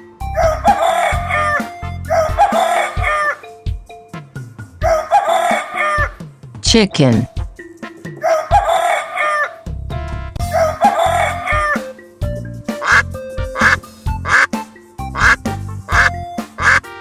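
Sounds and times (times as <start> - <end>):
children's music with steady beat: 0.0 - 17.0
rooster crowing: 0.4 - 3.4, 4.8 - 6.2, 8.2 - 9.6, 10.5 - 11.8.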